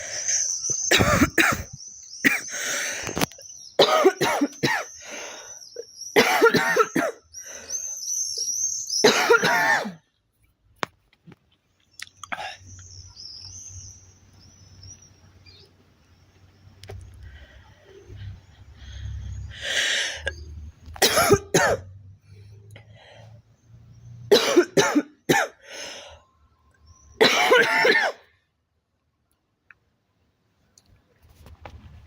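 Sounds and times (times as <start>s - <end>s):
girl coughing: 0.9s - 2.5s, 3.8s - 4.9s, 6.2s - 7.2s, 9.0s - 10.0s, 21.0s - 21.8s, 24.3s - 25.6s, 27.2s - 28.2s.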